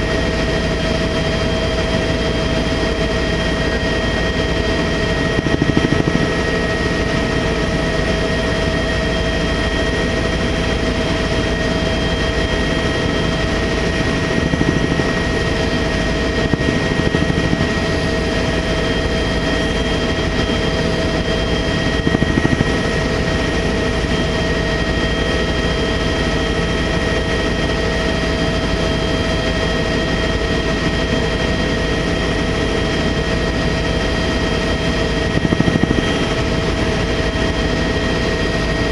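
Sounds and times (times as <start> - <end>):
helicopter engine and rotor drone: 0.0 - 38.9
high whine: 2.6 - 9.2, 10.0 - 24.6, 33.7 - 37.6.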